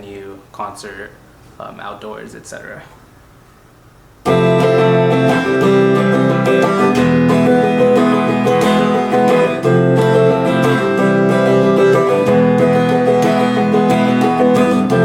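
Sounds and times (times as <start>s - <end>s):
guitar strumming chords: 4.3s - 15.0s.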